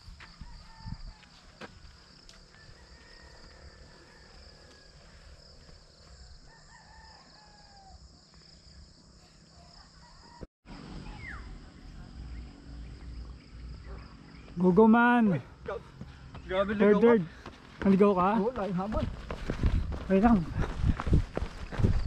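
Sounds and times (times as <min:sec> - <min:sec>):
insects droning: 0:00.0 - 0:22.0
distant roosters crowing: 0:00.2 - 0:08.2.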